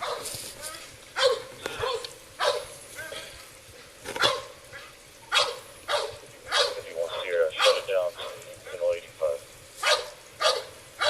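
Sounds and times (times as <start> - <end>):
dog barking: 0.0 - 0.3, 1.2 - 2.8, 4.2 - 8.4, 9.8 - 11.0.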